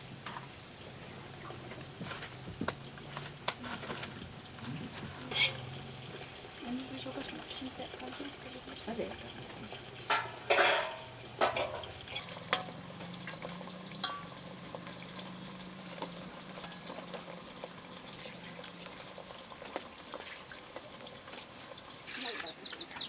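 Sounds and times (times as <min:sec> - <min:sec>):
potato slices frying in oil: 0:00.0 - 0:23.0
metal utensil scraping pan: 0:03.0 - 0:05.8, 0:10.0 - 0:15.3, 0:15.9 - 0:22.6.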